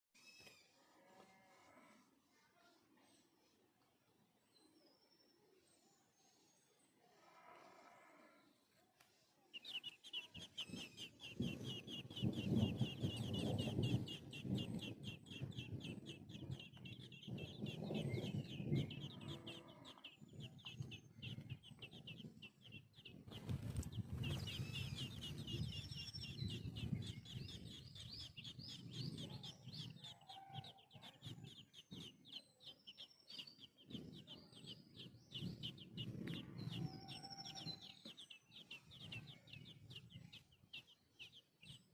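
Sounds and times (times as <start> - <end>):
chickens clucking: 9.6 - 32.4
fast high chirps: 9.6 - 40.9.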